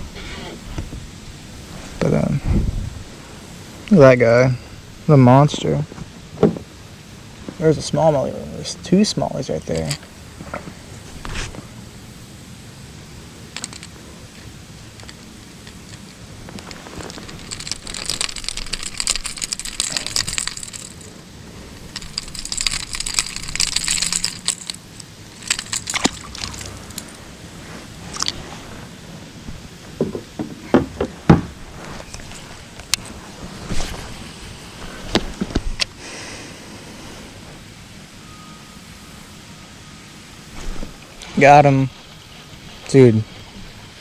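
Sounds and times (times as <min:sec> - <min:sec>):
water splashing and trickling: 0:13.4 - 0:29.0
sharp knocks: 0:30.0 - 0:31.6.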